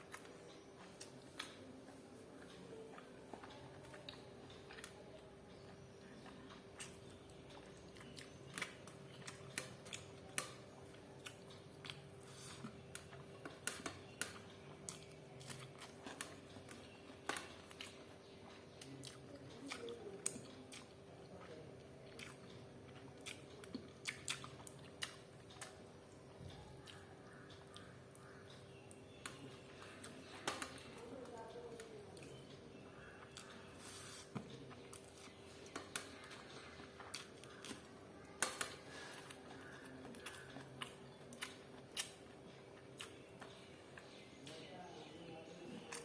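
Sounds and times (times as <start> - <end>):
chewing and biting: 6.2 - 21.4, 22.0 - 28.5, 33.1 - 44.2.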